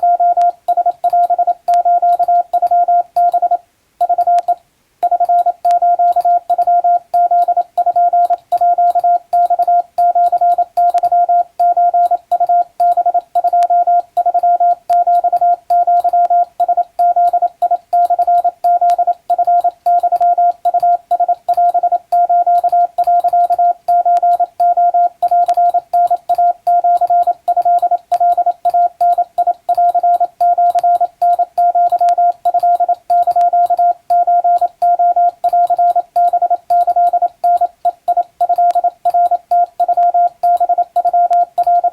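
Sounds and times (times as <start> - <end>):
morse code tone: 0.0 - 41.9.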